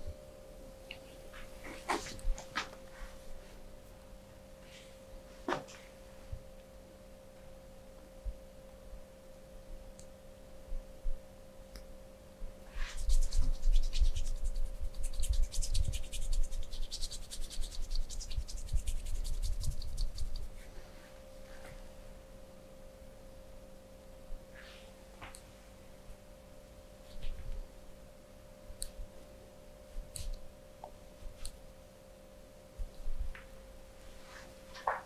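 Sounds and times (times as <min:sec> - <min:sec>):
faint steady hum: 0:00.0 - 0:35.0
scratching and rubbing: 0:12.8 - 0:20.7.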